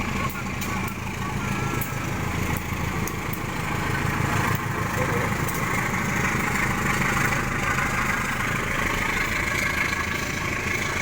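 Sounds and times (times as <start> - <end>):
diesel locomotive engine humming: 0.0 - 11.0.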